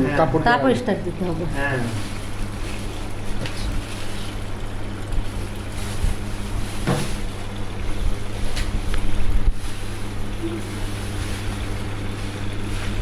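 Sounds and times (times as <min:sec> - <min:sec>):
water pouring into washing machine: 0:01.1 - 0:13.0.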